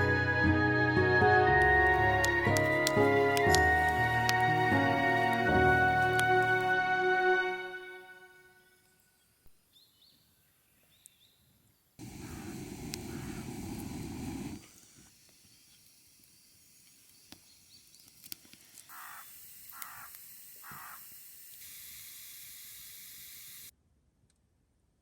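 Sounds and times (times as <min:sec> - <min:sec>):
crow cawing: 0:12.2 - 0:13.4, 0:18.9 - 0:21.0.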